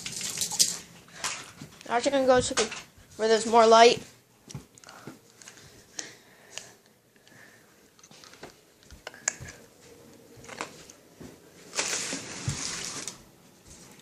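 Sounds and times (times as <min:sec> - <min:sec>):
soft handling clicks and rustles: 0:04.4 - 0:12.7.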